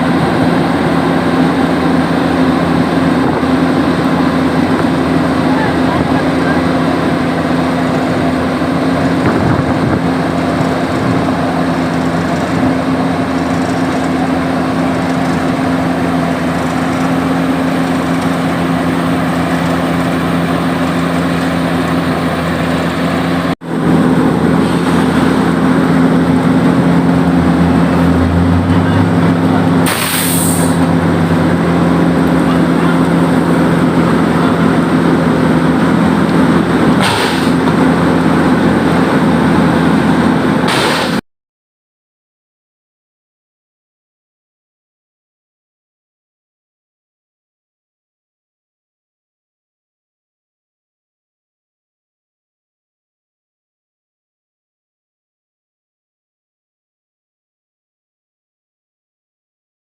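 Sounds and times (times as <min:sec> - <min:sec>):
heavy diesel engine running: 0:00.0 - 0:41.2
short hisses: 0:29.8 - 0:30.8.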